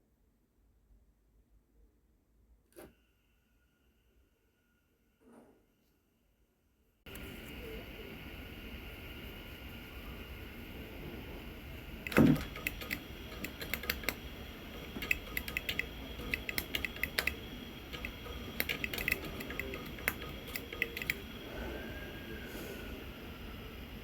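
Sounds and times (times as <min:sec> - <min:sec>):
small irregular clicks and taps: 0:12.0 - 0:21.4.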